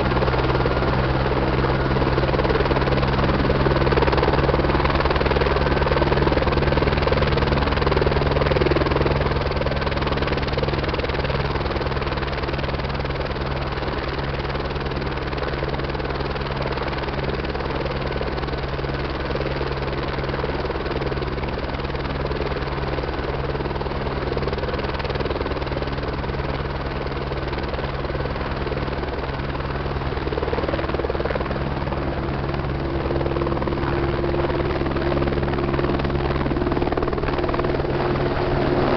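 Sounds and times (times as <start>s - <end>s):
helicopter turbine and rotor beat: 0.0s - 38.9s.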